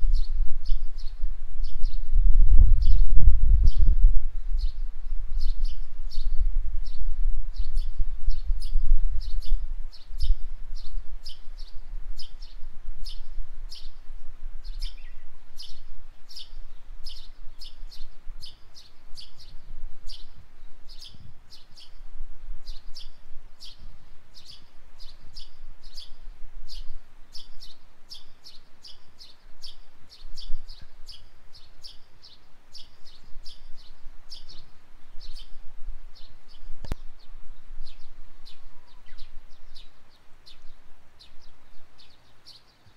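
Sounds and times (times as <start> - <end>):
low rumble: 0.0 - 11.1
songbird chirping: 0.0 - 42.9.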